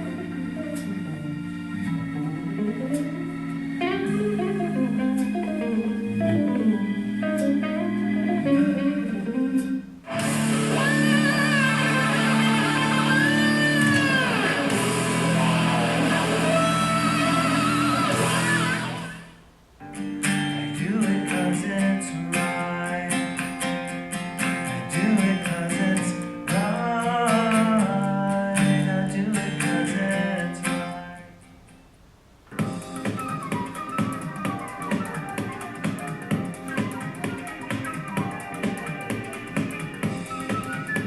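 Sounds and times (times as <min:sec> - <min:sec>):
quick plucked notes music: 0:00.0 - 0:17.1, 0:32.5 - 0:41.0
guitar song with singing: 0:00.0 - 0:31.8, 0:32.6 - 0:41.0.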